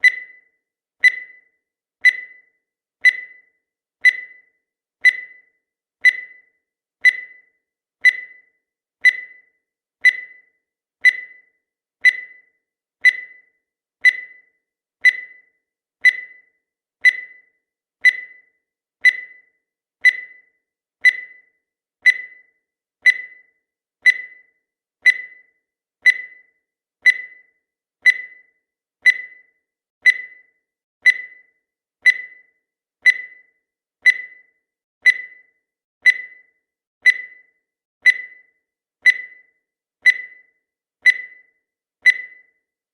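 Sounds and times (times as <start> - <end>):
short high beeps: 1.0 - 1.4.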